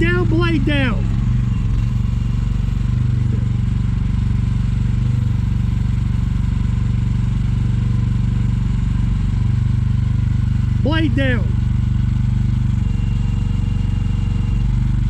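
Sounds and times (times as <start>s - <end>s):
excavator engine running: 0.0s - 5.2s, 9.0s - 15.0s.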